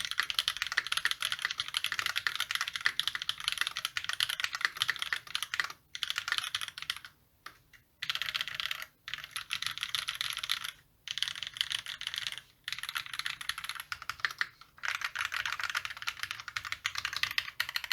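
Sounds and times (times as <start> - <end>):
mechanical keyboard typing: 0.0 - 17.9.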